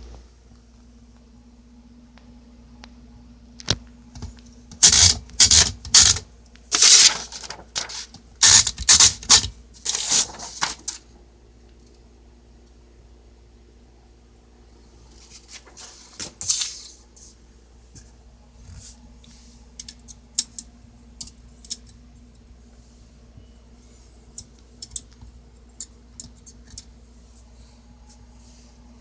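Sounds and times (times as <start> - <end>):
typewriter mechanism sliding: 4.8 - 10.9.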